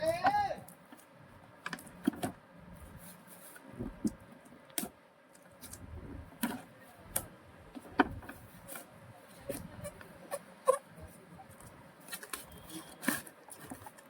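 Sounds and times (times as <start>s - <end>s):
hands handling packaging: 11.5s - 14.0s.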